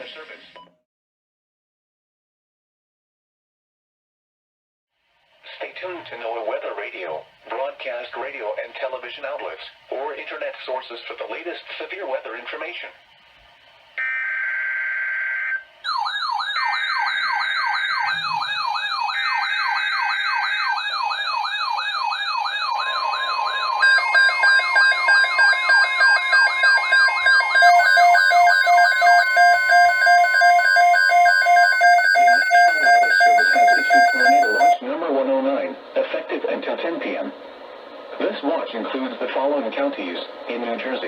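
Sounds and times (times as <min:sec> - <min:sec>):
wailing siren-like alert tone: 0:14.0 - 0:34.8
pulsing electronic beeps: 0:15.9 - 0:34.8
warbling data tones: 0:15.9 - 0:34.8
steady attention tone: 0:17.4 - 0:34.8.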